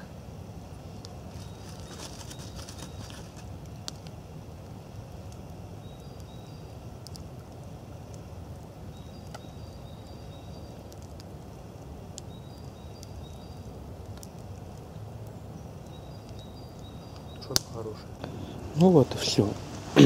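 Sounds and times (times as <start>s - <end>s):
small bird calling: 1.3s - 3.9s, 12.2s - 20.0s.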